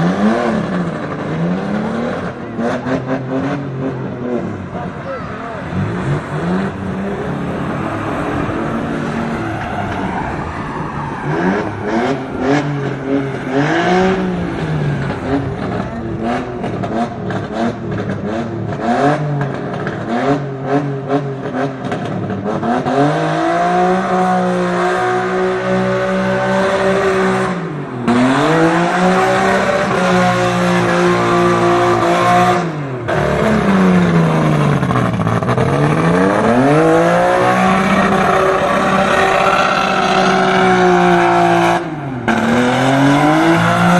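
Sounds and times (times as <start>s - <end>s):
car engine revving: 0.0s - 43.9s.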